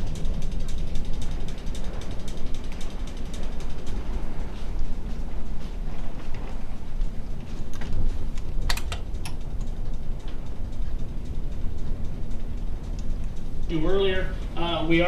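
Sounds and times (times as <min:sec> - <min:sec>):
low rumble: 0:00.0 - 0:15.0
faint ticks: 0:06.2 - 0:14.9
sharp clicks: 0:07.7 - 0:13.7.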